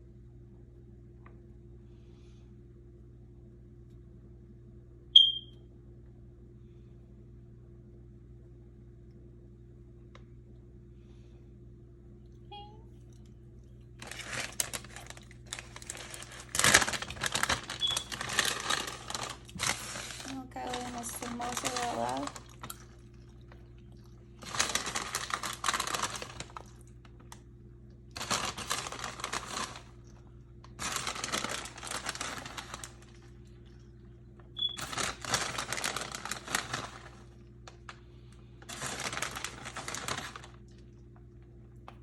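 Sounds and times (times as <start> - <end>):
faint steady hum: 0.0 - 42.0
cheese rustling onto pizza: 14.0 - 23.0, 24.4 - 27.2, 28.2 - 33.4, 34.9 - 38.0, 38.6 - 40.7.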